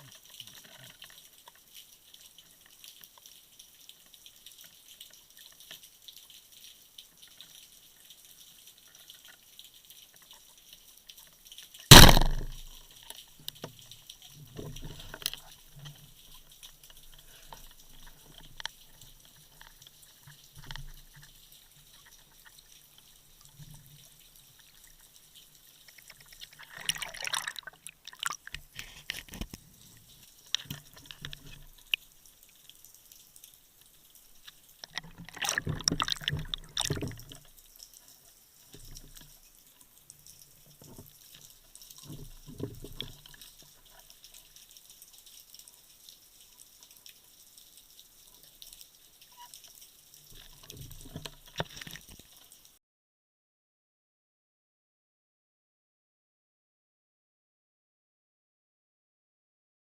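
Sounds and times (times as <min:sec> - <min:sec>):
small underwater clicks: 0:00.0 - 0:52.8
faint underwater noise: 0:11.2 - 0:44.5
rushing churning water: 0:24.5 - 0:29.3, 0:34.3 - 0:37.5.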